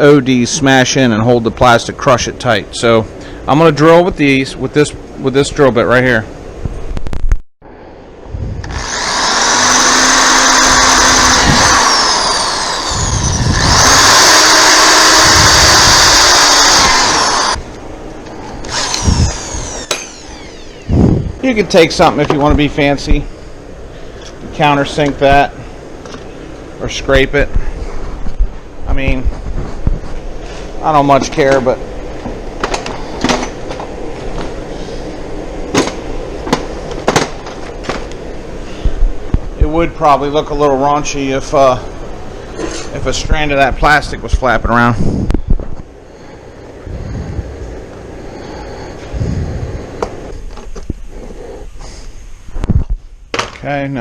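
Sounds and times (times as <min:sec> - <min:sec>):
steady background noise: 0:00.0 - 0:54.0
power drill boring plastic: 0:08.6 - 0:17.6, 0:18.7 - 0:21.0.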